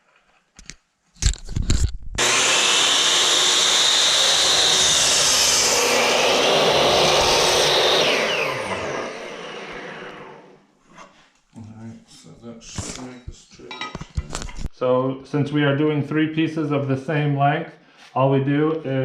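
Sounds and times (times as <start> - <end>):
electric saw cutting wood: 2.2 - 10.6.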